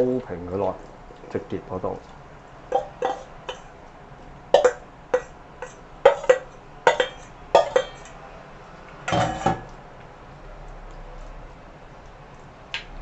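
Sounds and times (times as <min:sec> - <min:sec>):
food knocking on a plate: 0:02.7 - 0:03.7, 0:04.6 - 0:08.1
plate clattering: 0:02.7 - 0:03.7, 0:04.6 - 0:08.2, 0:09.1 - 0:09.7.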